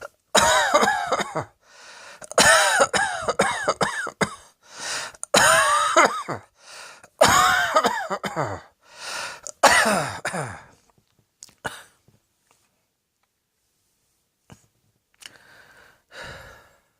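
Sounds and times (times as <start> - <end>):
person coughing: 0.0 - 1.6, 2.2 - 4.5, 5.3 - 6.5, 7.1 - 8.7, 9.5 - 10.7
person drawing breath: 1.6 - 2.3, 4.6 - 5.2, 6.6 - 7.1, 8.8 - 9.5, 15.2 - 16.9.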